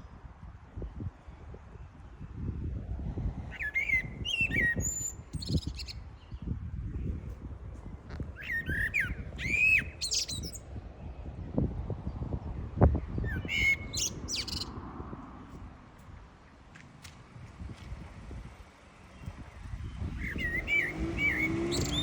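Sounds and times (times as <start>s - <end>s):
small birds chirping: 3.5s - 11.5s, 12.9s - 14.8s, 16.4s - 22.0s.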